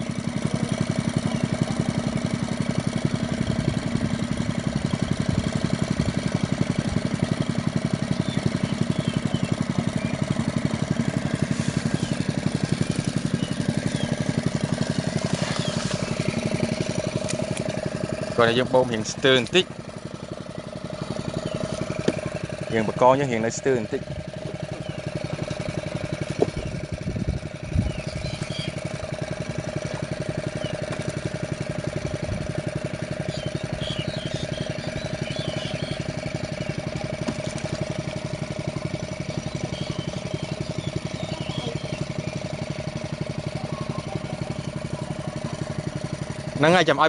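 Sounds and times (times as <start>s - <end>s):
small engine running steadily: 0.0s - 47.0s.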